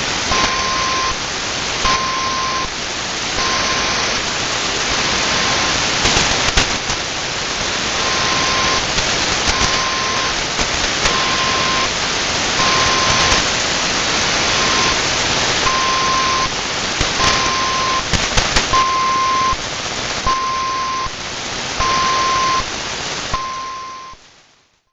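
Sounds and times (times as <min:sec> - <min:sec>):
radio static hiss: 0:00.0 - 0:24.9
steady mid-pitched beeps: 0:00.3 - 0:01.2, 0:01.8 - 0:02.7, 0:09.5 - 0:10.4, 0:11.1 - 0:11.9, 0:12.6 - 0:13.4, 0:17.2 - 0:18.1.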